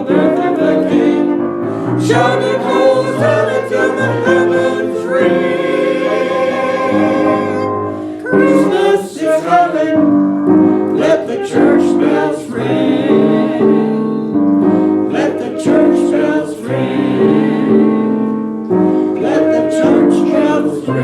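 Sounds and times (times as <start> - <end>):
choir singing: 0.0 - 21.0
piano accompaniment: 0.0 - 21.0.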